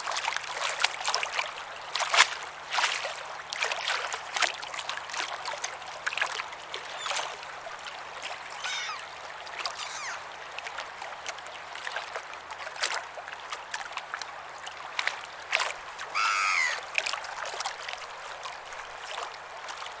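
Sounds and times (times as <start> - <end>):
birds calling: 6.8 - 7.6, 8.4 - 10.3, 16.0 - 16.9.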